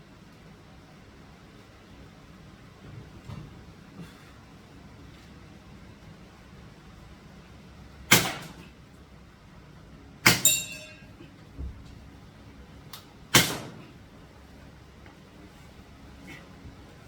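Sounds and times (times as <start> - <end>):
air rifle shots: 8.1 - 8.6, 10.2 - 10.8, 13.3 - 13.9
bb ringing on steel target: 10.3 - 11.2.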